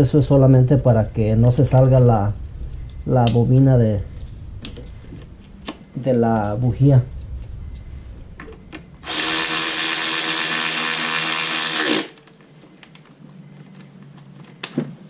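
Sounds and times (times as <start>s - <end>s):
power drill whining: 9.0s - 12.2s.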